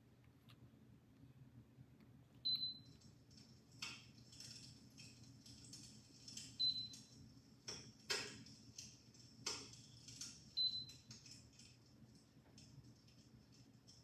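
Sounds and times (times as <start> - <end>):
faint low hum: 0.0 - 14.0
simulated fire crackling: 3.0 - 14.0.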